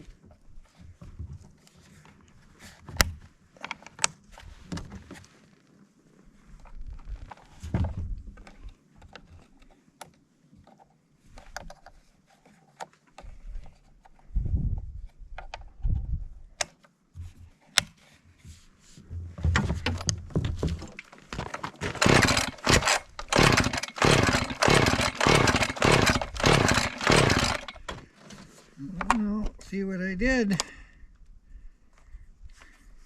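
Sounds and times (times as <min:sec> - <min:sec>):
chainsaw parts clicking and knocking: 0:19.5 - 0:28.2
recoil starter cord pulls: 0:20.9 - 0:28.4.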